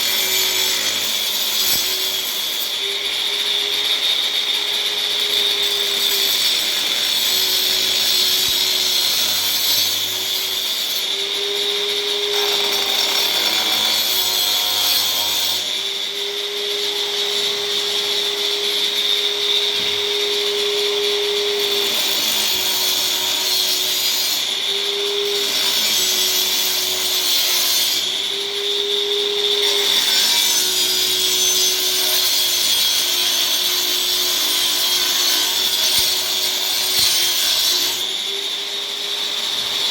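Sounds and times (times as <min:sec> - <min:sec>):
angle grinder motor whine: 0:09.9 - 0:23.5, 0:24.4 - 0:30.0.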